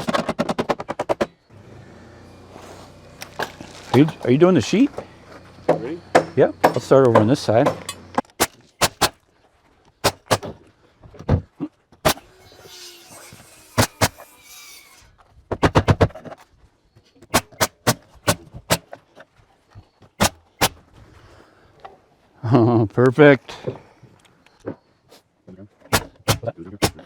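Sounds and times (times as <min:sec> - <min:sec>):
nails being hammered into wall: 0:05.6 - 0:09.2, 0:17.3 - 0:18.9, 0:25.9 - 0:27.0.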